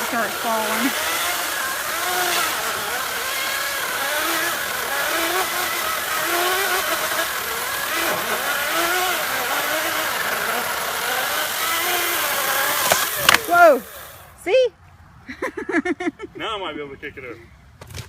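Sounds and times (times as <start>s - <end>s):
chainsaw cutting log: 0.0s - 14.4s.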